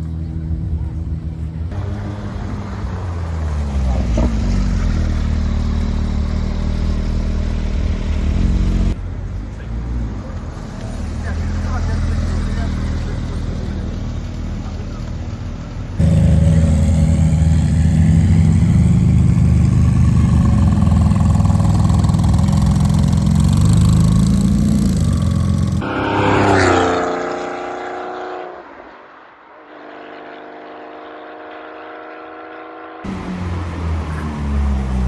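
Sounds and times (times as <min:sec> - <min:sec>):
deep loud engine note: 0:16.0 - 0:27.6
car passing by: 0:25.8 - 0:35.0.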